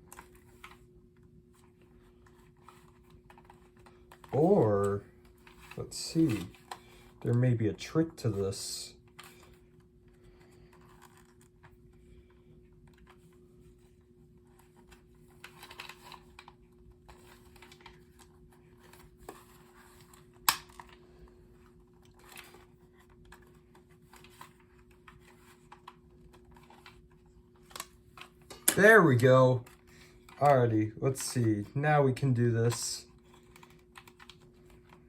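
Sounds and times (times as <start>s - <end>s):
faint steady hum: 0.0s - 35.0s
clicks and scrapes of packaging: 10.4s - 11.8s, 14.6s - 21.0s, 33.0s - 35.0s.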